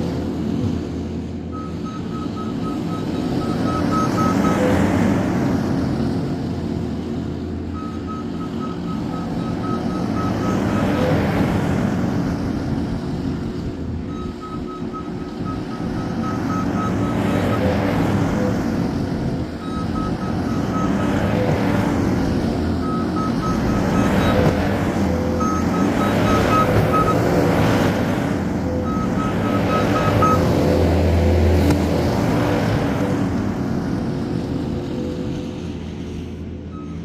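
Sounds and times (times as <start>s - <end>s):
diesel engine revving under load: 0.0s - 37.0s
reversing alarm beeping: 1.5s - 4.8s, 7.7s - 11.2s, 14.1s - 18.6s, 19.6s - 21.9s, 22.6s - 31.0s, 36.7s - 37.0s.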